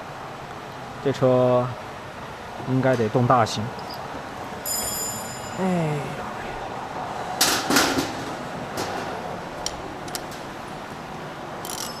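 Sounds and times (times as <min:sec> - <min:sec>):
metal tools clanking: 0:11.6 - 0:12.0.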